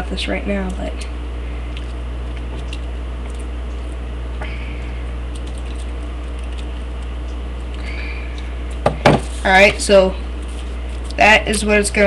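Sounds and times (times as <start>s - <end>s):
low electrical hum: 0.0s - 12.0s
small clicks and scratches: 5.3s - 7.8s.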